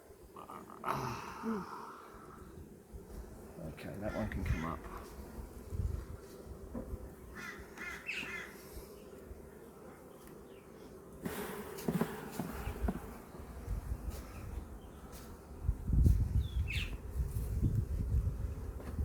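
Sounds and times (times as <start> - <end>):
bees buzzing: 0.0 - 19.0
crow cawing: 7.4 - 8.6
rustling and scraping: 11.2 - 13.3.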